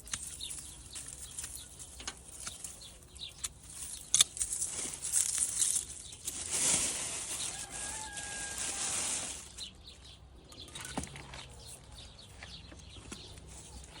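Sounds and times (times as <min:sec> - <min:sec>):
leafy plant stems rustling: 0:00.0 - 0:10.0.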